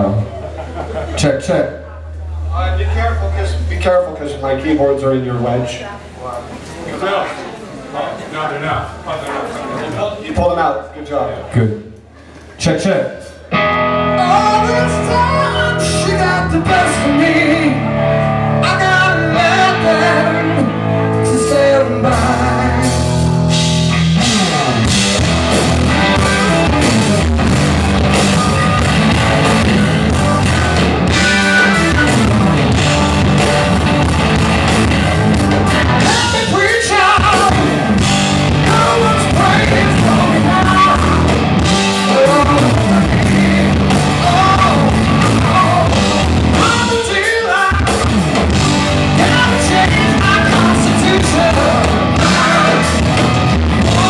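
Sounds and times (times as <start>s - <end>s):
rock band playing live: 13.2s - 54.0s
electric guitar: 13.4s - 54.0s
person singing: 14.0s - 17.9s, 18.6s - 23.2s, 35.9s - 48.0s, 49.1s - 54.0s.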